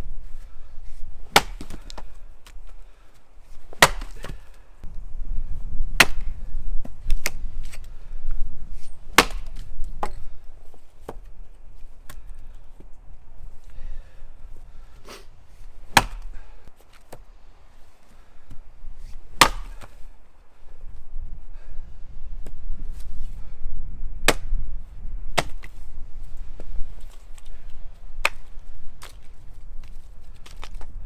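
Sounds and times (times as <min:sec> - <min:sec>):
axe chopping wood: 0:01.3 - 0:02.6, 0:03.6 - 0:04.6, 0:06.0 - 0:07.9, 0:09.1 - 0:10.3, 0:15.9 - 0:17.3, 0:19.3 - 0:20.0, 0:24.3 - 0:24.6, 0:25.4 - 0:25.8, 0:28.2 - 0:30.8.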